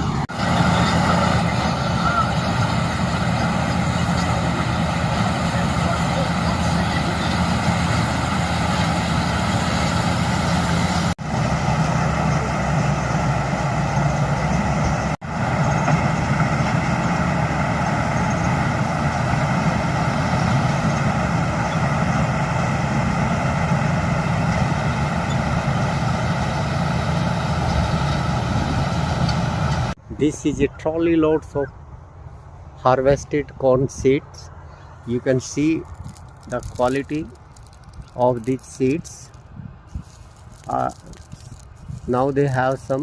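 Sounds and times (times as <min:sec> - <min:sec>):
diesel engine running: 0:00.0 - 0:43.0
dense mechanical clatter: 0:35.5 - 0:39.4.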